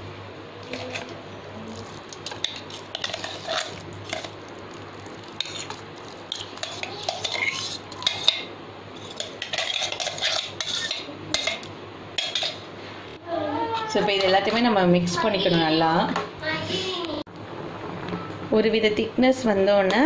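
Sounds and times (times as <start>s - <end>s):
metal spoon scraping a pan: 0.7s - 1.2s, 2.2s - 4.4s, 5.2s - 12.6s.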